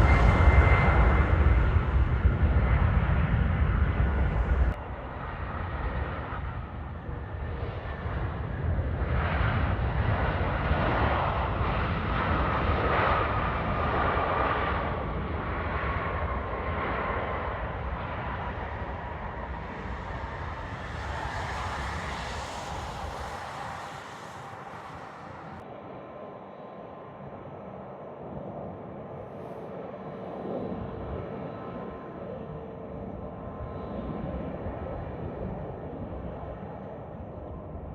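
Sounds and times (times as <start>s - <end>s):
thin engine whine: 0.0s - 4.8s, 17.6s - 25.6s
jet airliner passing: 0.0s - 37.9s.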